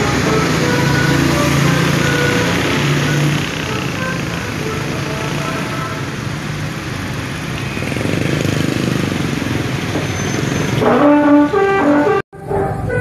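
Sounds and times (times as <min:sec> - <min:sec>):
multi-note bus horn tune: 0:00.0 - 0:06.2, 0:10.8 - 0:13.0
bus engine running: 0:00.0 - 0:13.0
road noise: 0:00.0 - 0:13.0.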